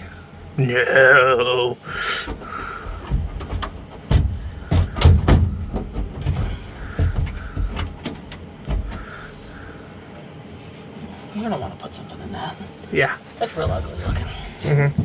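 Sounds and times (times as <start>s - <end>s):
car interior parts clunking: 1.9s - 9.7s, 13.4s - 15.0s.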